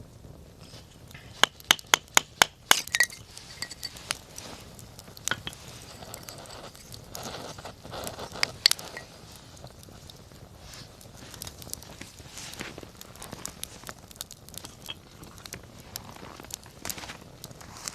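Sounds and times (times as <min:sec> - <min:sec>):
dry firewood cracking: 0:00.0 - 0:17.9.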